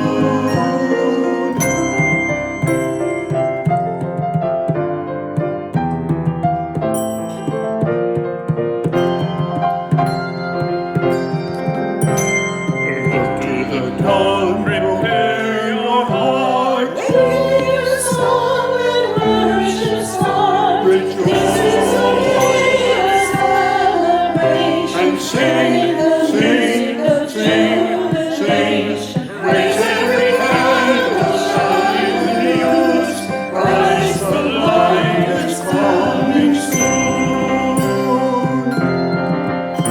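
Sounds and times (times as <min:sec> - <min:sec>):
voices singing a hymn: 0:00.0 - 0:03.0, 0:12.9 - 0:39.9
instrumental accompaniment chords: 0:00.0 - 0:39.9.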